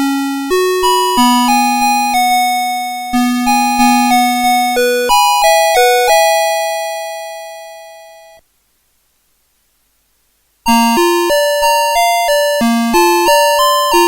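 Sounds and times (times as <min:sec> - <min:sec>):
electronic alarm clock melody: 0:00.0 - 0:08.4, 0:10.7 - 0:14.0.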